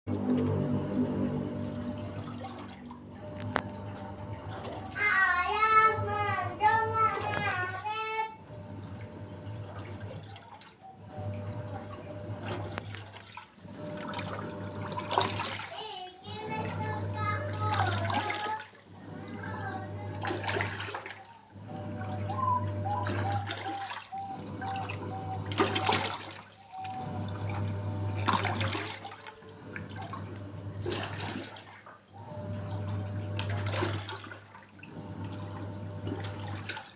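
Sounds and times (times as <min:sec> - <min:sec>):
washing machine low hum: 0:00.0 - 0:36.9
electronic melody note: 0:00.1 - 0:02.4
water running into drum: 0:00.1 - 0:36.9.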